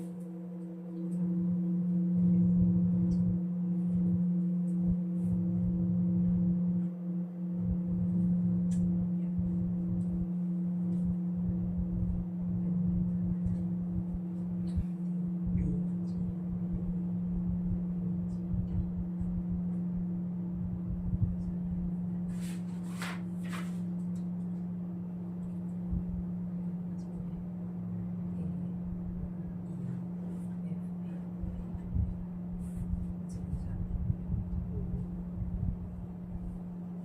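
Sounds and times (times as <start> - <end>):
low humming drone: 0.0 - 37.0
soft rustles and clicks: 22.2 - 24.8.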